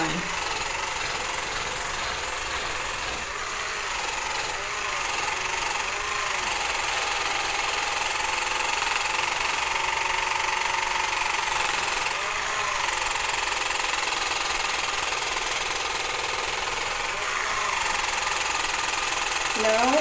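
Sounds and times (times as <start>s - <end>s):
massage gun buzzing: 0.0s - 20.0s.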